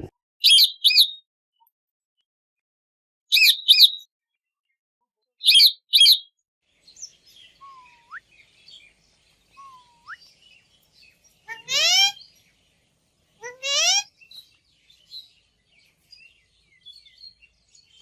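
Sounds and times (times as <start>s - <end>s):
faint parrot chattering: 11.4s - 12.2s, 13.4s - 14.1s
parrot double-note calls: 11.5s - 12.2s.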